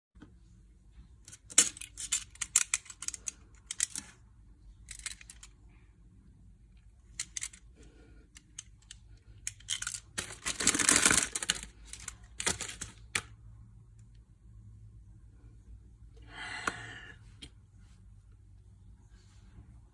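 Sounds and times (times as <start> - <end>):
packaging rustling: 9.7 - 13.2.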